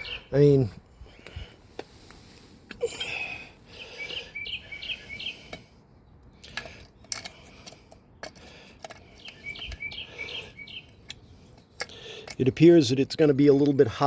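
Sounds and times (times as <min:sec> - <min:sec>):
small bird chirping: 0:00.0 - 0:00.4, 0:03.8 - 0:07.1, 0:09.1 - 0:11.8.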